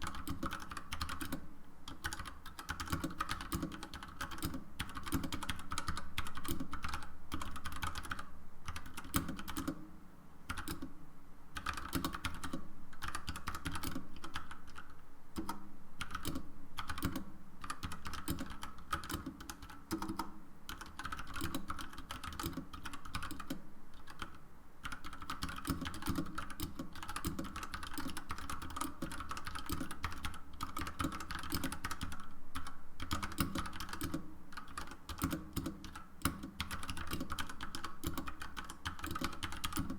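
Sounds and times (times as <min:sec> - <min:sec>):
mechanical keyboard typing: 0:00.0 - 0:09.8, 0:10.5 - 0:10.9, 0:11.6 - 0:39.9.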